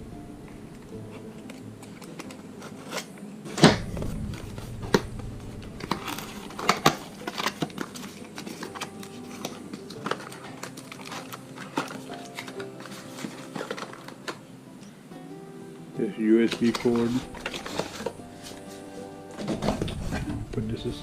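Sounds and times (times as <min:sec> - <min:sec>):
packaging rustling and clicking: 0:00.7 - 0:14.5, 0:16.4 - 0:20.8
packaging sharp snap: 0:05.8 - 0:14.4, 0:16.5 - 0:18.7.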